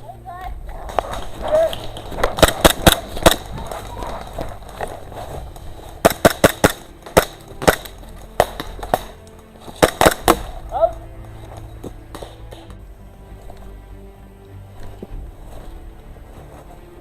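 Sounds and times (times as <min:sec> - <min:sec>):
airsoft gun shots: 0:02.4 - 0:03.5, 0:06.0 - 0:09.1.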